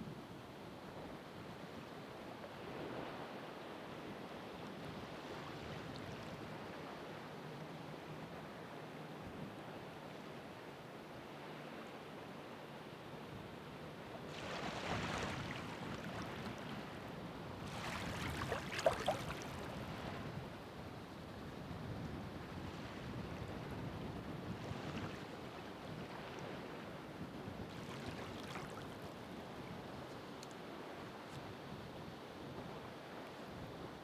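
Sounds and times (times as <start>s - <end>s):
ocean waves breaking on shore: 13.7s - 20.9s, 22.3s - 29.8s
water splashing: 17.7s - 19.7s.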